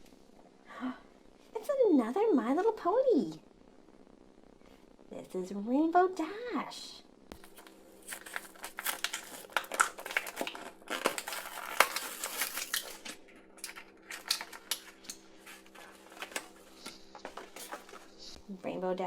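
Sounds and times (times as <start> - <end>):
plastic packaging crinkling: 7.3 - 18.4.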